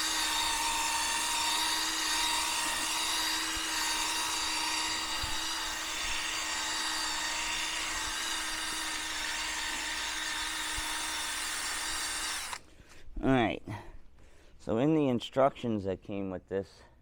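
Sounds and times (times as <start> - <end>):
drill spinning wire brush on concrete: 0.0 - 12.6.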